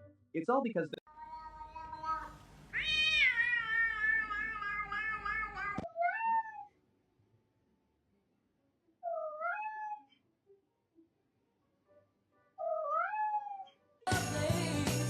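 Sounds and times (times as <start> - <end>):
cat meowing: 1.2 - 6.7, 9.0 - 10.1, 12.6 - 13.7.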